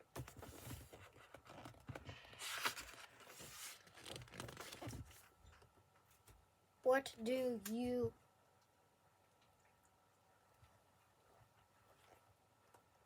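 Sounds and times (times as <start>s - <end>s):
paper pages rustling and crinkling: 0.1s - 5.4s.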